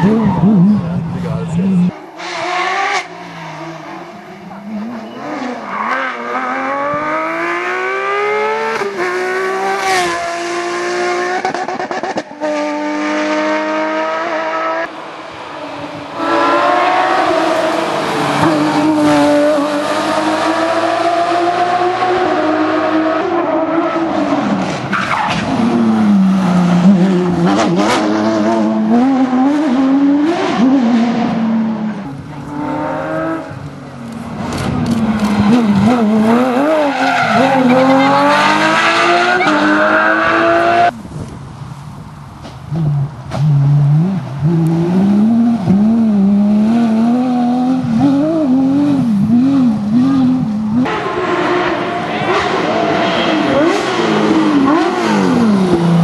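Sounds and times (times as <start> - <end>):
rally car engine revving: 0.0 - 15.1, 15.7 - 41.0, 42.7 - 56.0
tyres skidding: 15.0 - 41.0.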